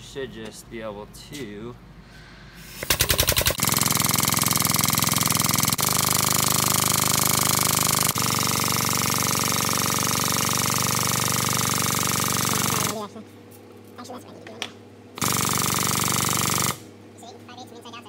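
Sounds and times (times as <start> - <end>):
tubing bender running: 2.8 - 13.0.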